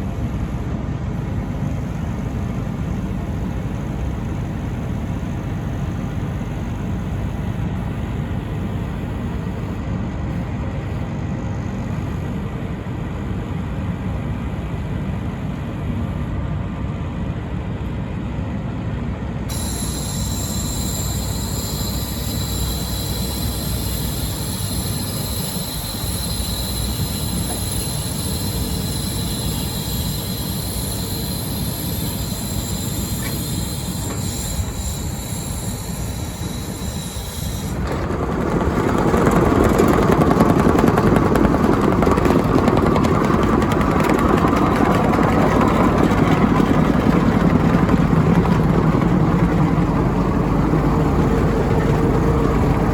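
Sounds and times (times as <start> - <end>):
heavy diesel machine rumble: 0.0 - 52.9
high-pitched hiss and whine: 19.5 - 37.8.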